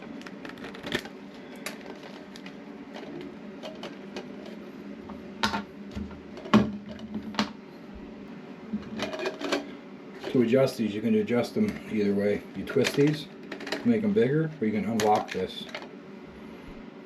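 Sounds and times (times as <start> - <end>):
steady low hum: 0.0 - 17.0
plastic parts clicking and knocking: 0.1 - 4.6, 12.8 - 13.8, 15.0 - 15.9.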